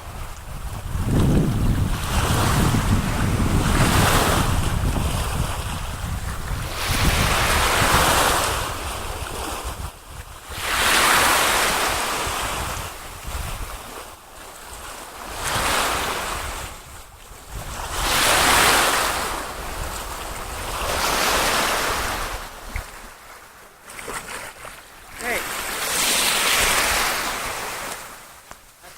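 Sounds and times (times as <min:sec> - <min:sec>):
wind rumbling on microphone: 0:00.0 - 0:23.2
water surging around a kayak: 0:00.0 - 0:28.9.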